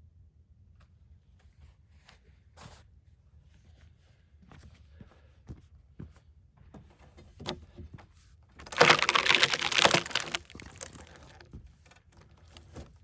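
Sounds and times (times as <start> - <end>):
log splitting with cracks: 8.7 - 11.3.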